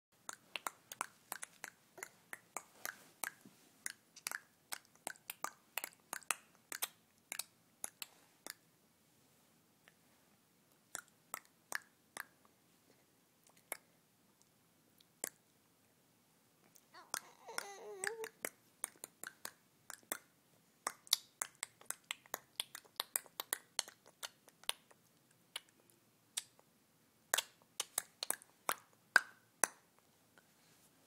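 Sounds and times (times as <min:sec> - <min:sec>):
sharp mouth clicks: 0:10.9 - 0:12.4.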